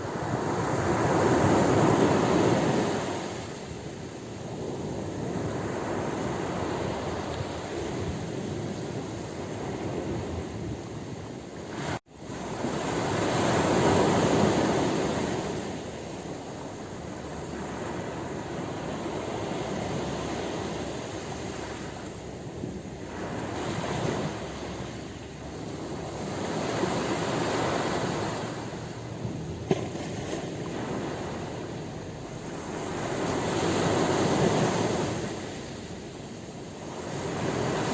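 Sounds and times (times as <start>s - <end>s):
ocean waves washing on shore: 0.0s - 37.9s.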